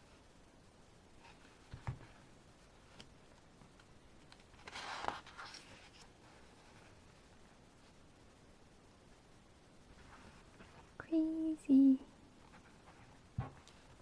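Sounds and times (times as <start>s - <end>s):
book pages turning: 3.7s - 7.0s.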